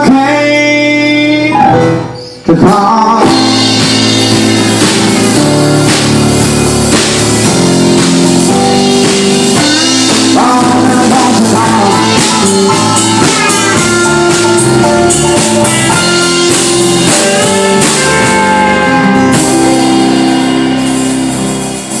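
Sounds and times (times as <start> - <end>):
rock band playing: 0.0 - 22.0
bending guitar notes: 1.3 - 22.0.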